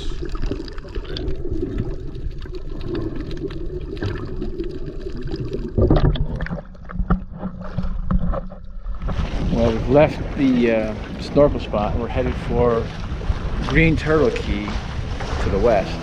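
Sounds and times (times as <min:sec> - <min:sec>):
water sloshing and gurgling: 0:00.0 - 0:16.0
rush of water: 0:09.0 - 0:16.0.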